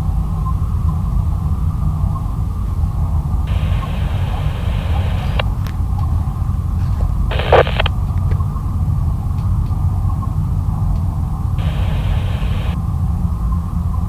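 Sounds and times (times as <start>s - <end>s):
burst of noise: 3.5s - 5.4s, 7.3s - 7.9s, 11.6s - 12.8s
hiss of noise: 3.5s - 5.4s, 7.3s - 7.9s, 11.6s - 12.8s.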